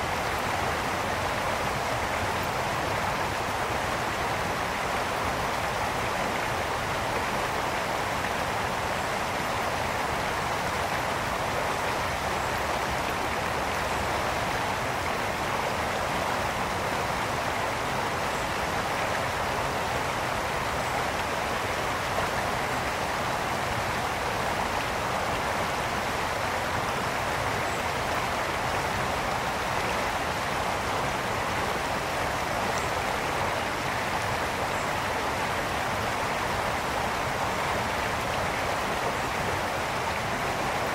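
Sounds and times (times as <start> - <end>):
brook water splashing over stones: 0.0 - 40.9.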